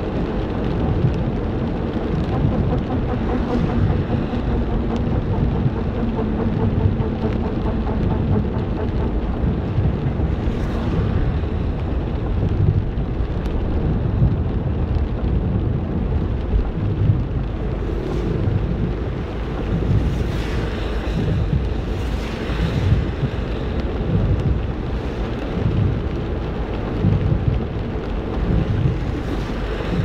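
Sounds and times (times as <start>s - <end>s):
continuous low rumble: 0.0s - 30.0s
rain falling: 0.0s - 30.0s.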